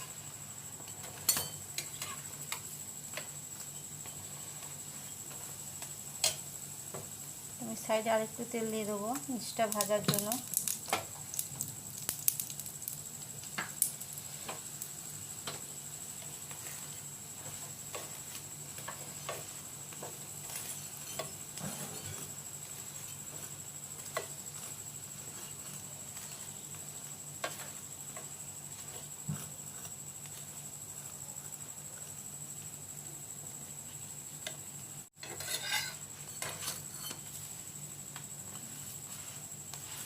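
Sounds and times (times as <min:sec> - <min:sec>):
oil sizzling in a pan: 0:00.0 - 0:40.0
oil crackling and popping: 0:09.1 - 0:21.6.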